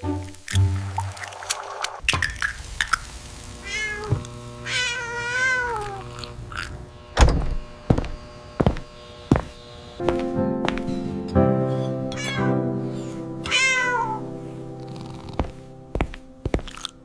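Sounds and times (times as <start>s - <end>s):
cat meowing: 3.6s - 6.1s, 12.1s - 12.6s, 13.4s - 14.3s.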